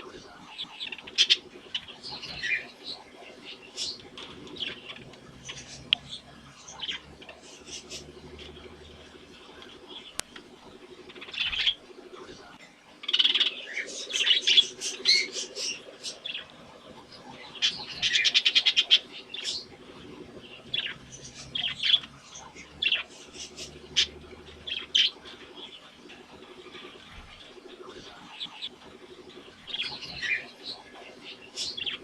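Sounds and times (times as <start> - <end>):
budgerigars chirping and warbling: 0.0 - 32.0.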